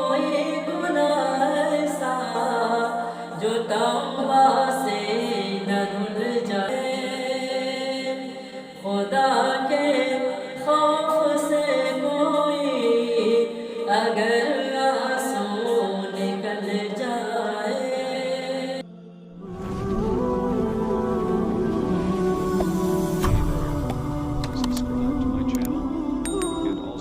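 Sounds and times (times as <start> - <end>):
person singing a cappella: 0.0 - 27.0.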